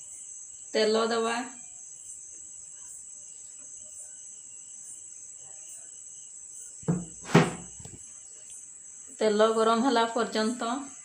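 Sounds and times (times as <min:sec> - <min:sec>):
utensil knocking against pan: 0:06.9 - 0:07.8.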